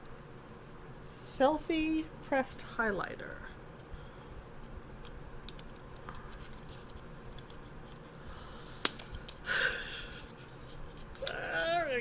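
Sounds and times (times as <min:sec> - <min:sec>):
packaging clicks and rustles: 0:05.6 - 0:09.4.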